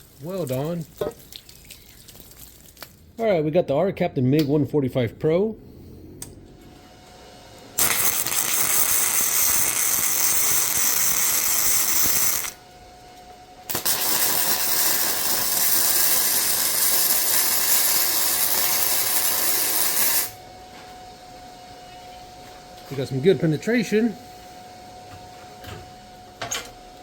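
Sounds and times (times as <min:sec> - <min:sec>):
welder arc crackling hiss: 0:00.0 - 0:00.8, 0:07.8 - 0:12.6, 0:13.7 - 0:20.4.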